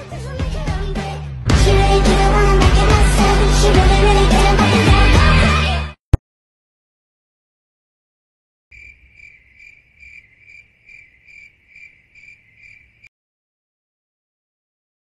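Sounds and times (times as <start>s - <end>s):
cricket chirping: 8.7s - 13.1s.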